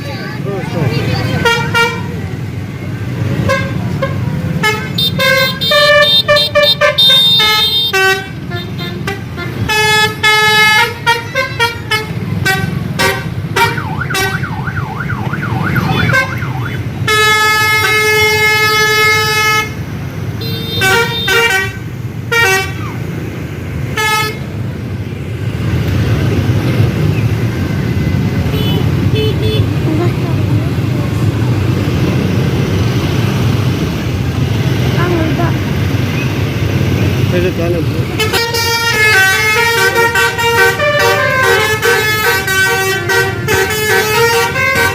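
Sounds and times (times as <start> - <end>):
engine and road rumble: 0.0 - 44.9
musical bus air horn toots: 3.4 - 14.4, 17.1 - 19.8, 20.4 - 22.8, 23.9 - 24.4, 38.2 - 44.9.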